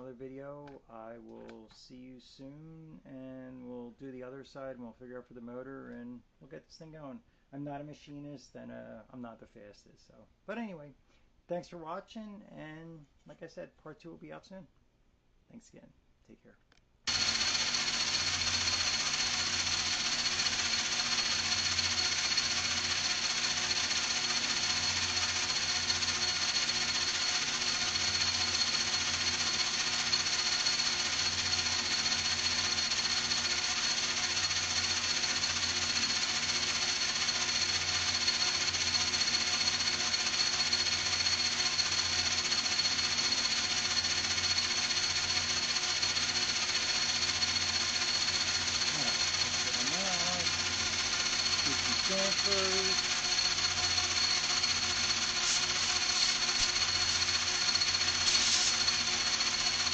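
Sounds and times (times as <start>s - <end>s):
machine tool whining: 17.1s - 59.9s.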